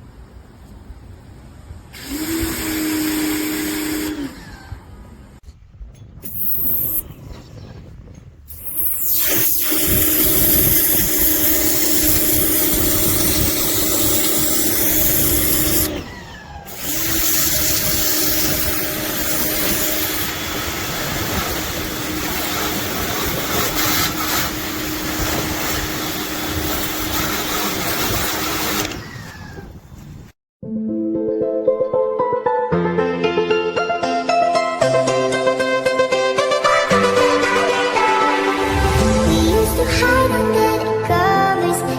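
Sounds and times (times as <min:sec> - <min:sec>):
pressure washer motor hum: 0:01.9 - 0:05.4, 0:06.2 - 0:07.0, 0:08.5 - 0:29.9
water spray hiss: 0:06.2 - 0:07.0, 0:08.5 - 0:15.9, 0:16.8 - 0:28.8.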